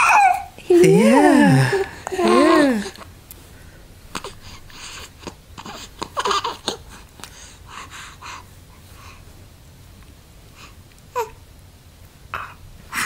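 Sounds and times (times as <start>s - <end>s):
baby vocal sound: 0.0s - 3.0s
baby breathing noisily: 4.1s - 9.3s.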